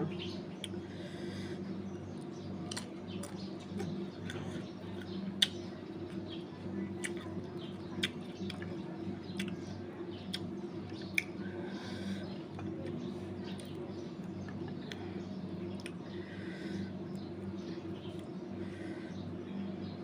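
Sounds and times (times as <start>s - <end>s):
steady low hum: 0.0s - 20.0s
wet chewing clicks and smacks: 0.5s - 0.9s, 2.1s - 16.2s.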